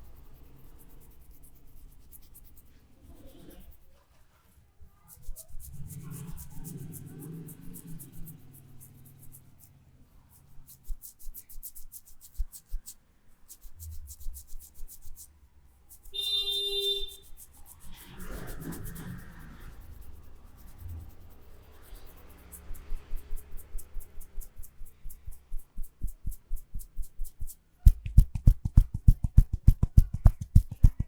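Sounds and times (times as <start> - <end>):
hands rubbing on a head: 0.0 - 15.3, 16.8 - 31.0.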